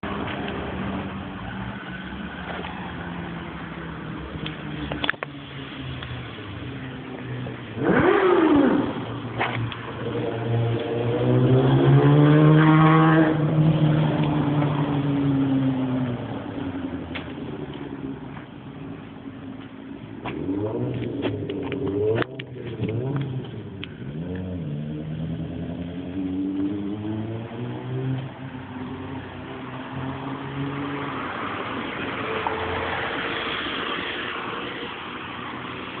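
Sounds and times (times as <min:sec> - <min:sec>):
motorcycle engine revving: 0:07.4 - 0:15.8, 0:20.2 - 0:28.6.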